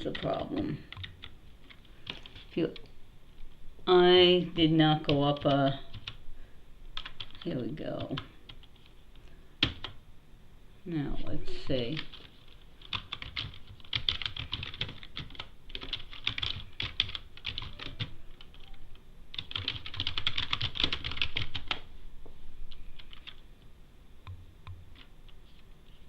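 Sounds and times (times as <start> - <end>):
typing on computer keyboard: 5.1 - 6.2, 7.0 - 8.9, 9.6 - 10.0, 12.0 - 21.8.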